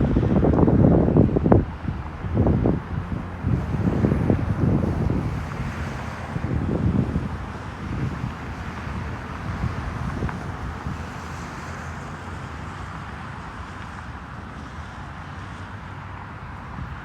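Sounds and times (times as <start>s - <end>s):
wind buffeting microphone: 0.0s - 12.8s
outdoor background rumble: 0.0s - 17.0s.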